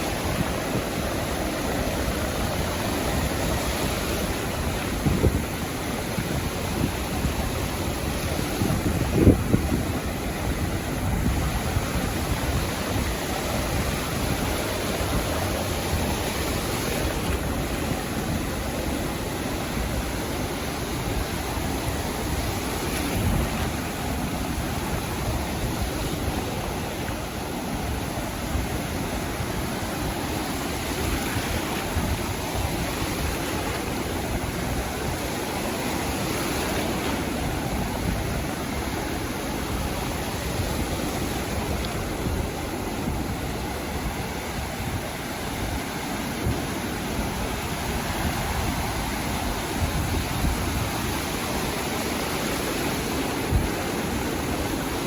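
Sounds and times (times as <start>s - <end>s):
waves breaking on beach: 0.0s - 55.0s.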